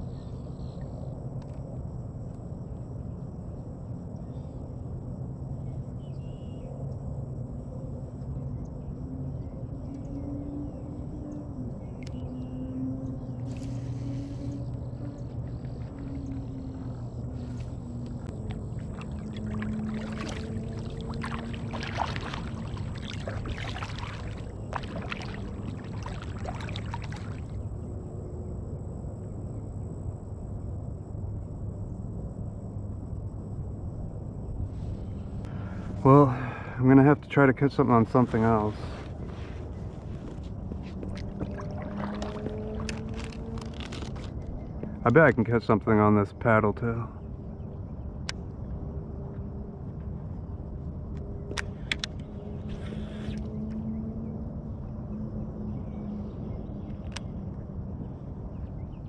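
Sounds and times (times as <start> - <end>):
distant engine drone: 0.0 - 59.0
low steady rumble: 0.0 - 59.0
water splashing against kayak: 13.4 - 27.6, 38.1 - 44.4.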